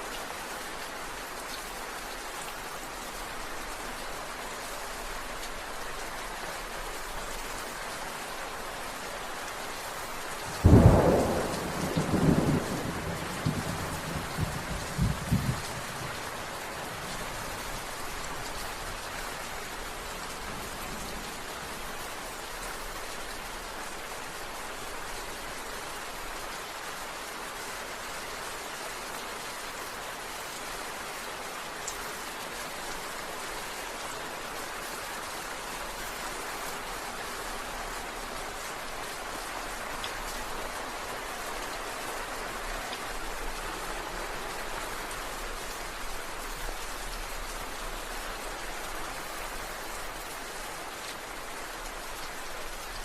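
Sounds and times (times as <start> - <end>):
heavy rain hissing: 1.6 - 26.2
thunder cracking and rumbling: 10.6 - 16.1.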